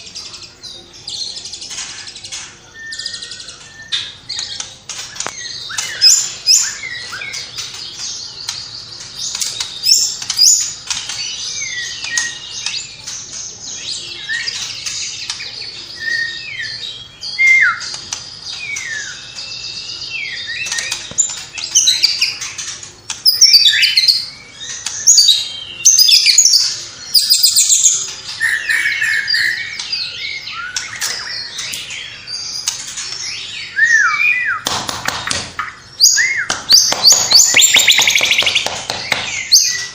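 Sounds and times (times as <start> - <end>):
songbird singing varied whistles: 33.6 - 34.7, 35.6 - 39.9.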